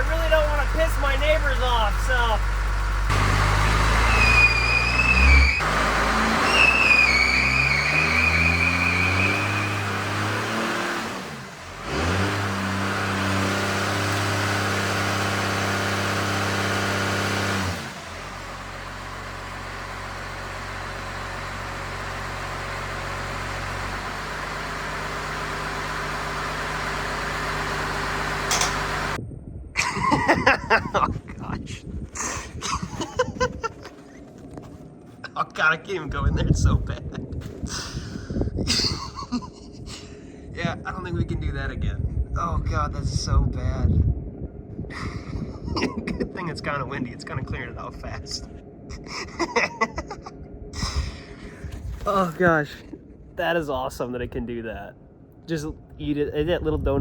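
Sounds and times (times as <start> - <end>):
diesel truck engine revving: 0.0 - 29.2
tire squeal: 2.7 - 14.6.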